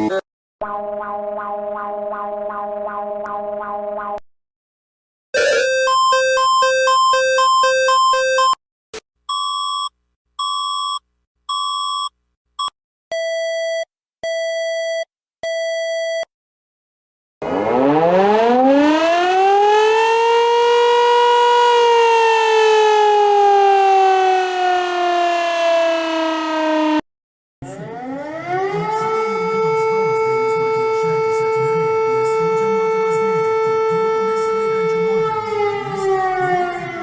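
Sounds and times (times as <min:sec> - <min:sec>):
short alarm beeps: 0:05.6 - 0:08.6
civil defence siren winding: 0:17.4 - 0:27.0, 0:27.6 - 0:37.0.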